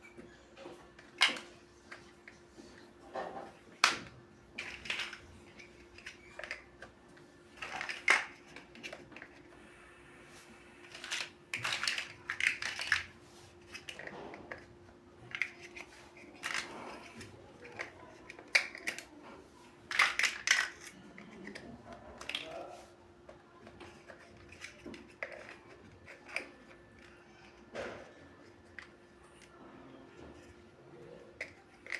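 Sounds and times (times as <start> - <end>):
faint steady hum: 0.0 - 31.9
plastic bricks clicking together: 3.8 - 6.9, 7.5 - 9.4, 10.8 - 14.7, 15.3 - 19.1, 19.8 - 22.6, 31.4 - 31.9.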